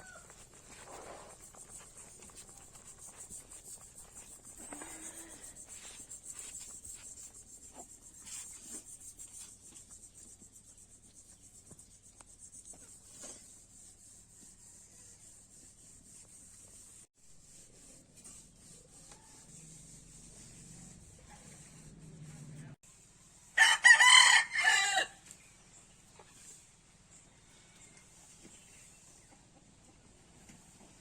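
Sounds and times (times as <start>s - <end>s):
rubbing and clicking: 0.2s - 14.7s.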